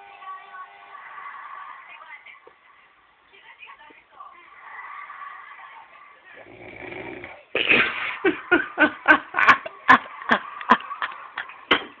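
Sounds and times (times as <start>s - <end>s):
man snoring: 6.4s - 7.4s
loud sharp snorts: 6.4s - 8.0s.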